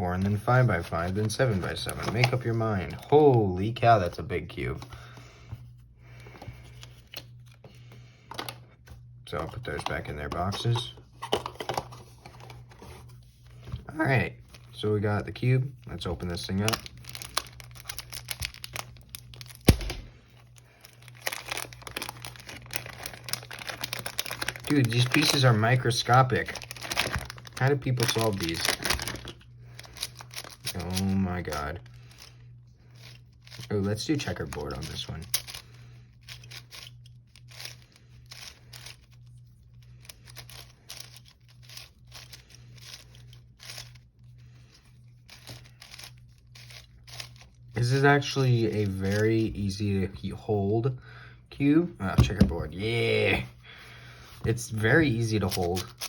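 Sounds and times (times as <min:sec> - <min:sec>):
packaging crinkling and rustling: 0:00.1 - 0:03.5, 0:09.8 - 0:49.7, 0:54.5 - 0:56.0.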